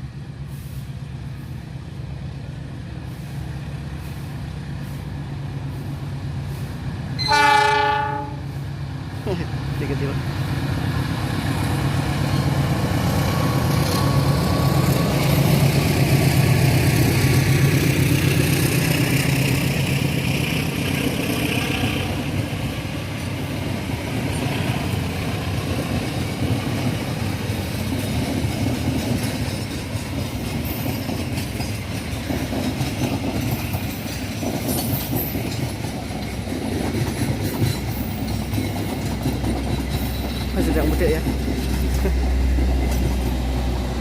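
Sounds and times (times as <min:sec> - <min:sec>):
diesel locomotive engine rumble: 0:00.0 - 0:44.0
rail noise: 0:00.0 - 0:44.0
hiss: 0:00.4 - 0:01.7, 0:03.0 - 0:06.9.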